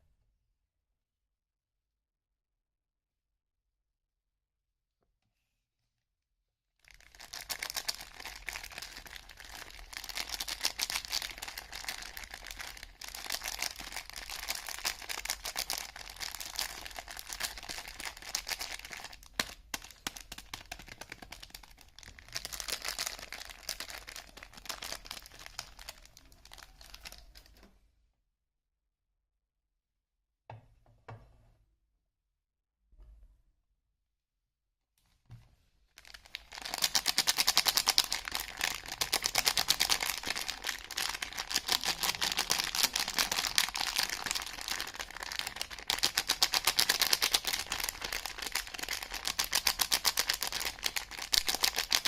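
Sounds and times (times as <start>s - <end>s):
wrapper crinkling and tearing: 6.8s - 27.6s, 36.0s - 52.0s.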